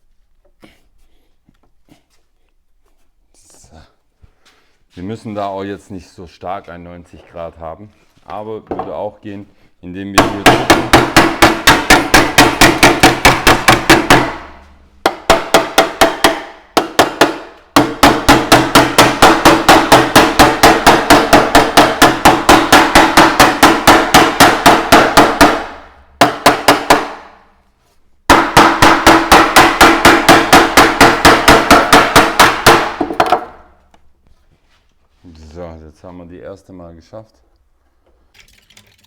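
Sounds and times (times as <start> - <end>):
hammer striking steel sheet: 10.2 - 27.4.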